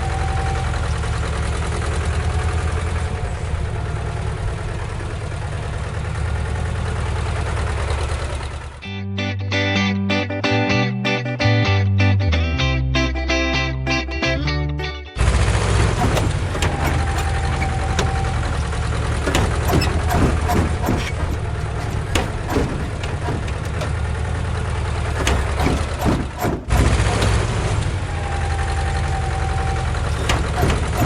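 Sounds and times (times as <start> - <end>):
heavy engine idling: 0.0 - 8.9, 15.2 - 31.0
clicks: 15.8 - 24.0.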